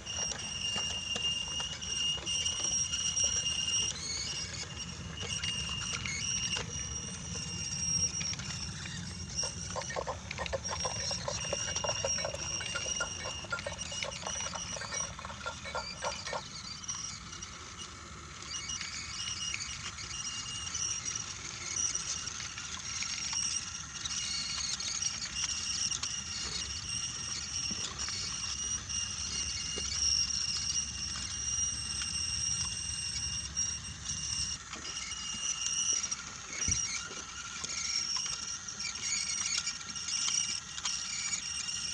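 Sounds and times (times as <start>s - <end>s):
toy train motor whine: 0.0s - 41.9s
wheels rolling on wooden rails: 0.0s - 41.9s
rapid clicks: 0.1s - 17.1s.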